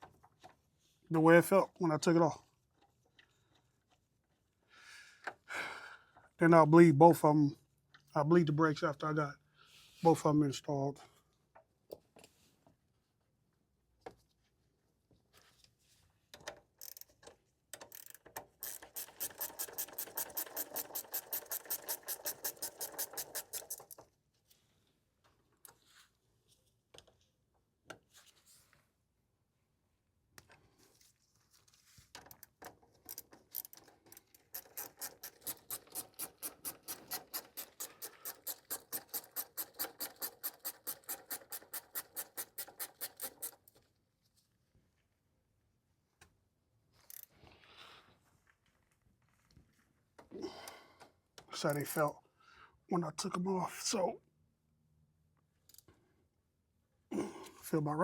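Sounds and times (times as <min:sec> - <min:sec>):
ratchet wrench clicking: 0:16.8 - 0:24.0, 0:33.1 - 0:43.7, 0:47.0 - 0:47.3.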